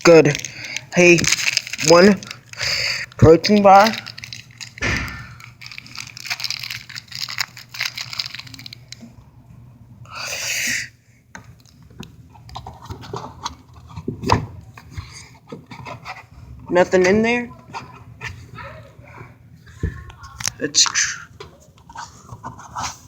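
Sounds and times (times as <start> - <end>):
plastic wrapper crinkling: 0.0 - 9.0
wrapper ripping: 0.0 - 9.0.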